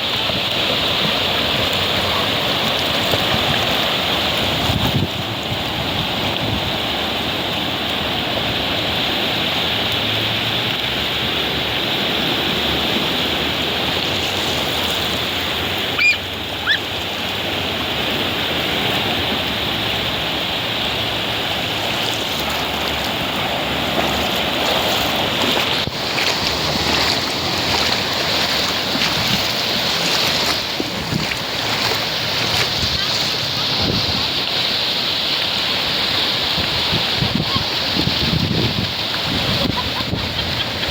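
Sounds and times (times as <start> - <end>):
sea waves washing on shore: 0.0 - 40.9
wind buffeting microphone: 0.8 - 6.9, 22.5 - 34.4, 36.5 - 40.9
high rising cry: 15.8 - 16.9.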